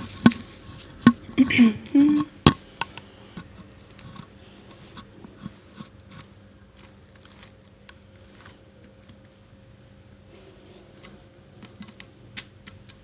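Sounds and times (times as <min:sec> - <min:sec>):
wet chewing crunches: 0:00.0 - 0:13.0
mouth clicks: 0:00.2 - 0:05.6.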